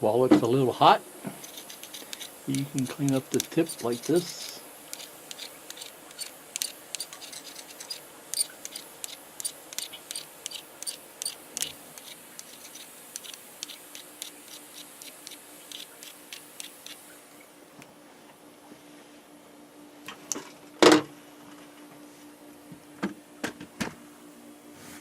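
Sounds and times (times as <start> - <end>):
soldering iron tip scraping: 1.3 - 17.1.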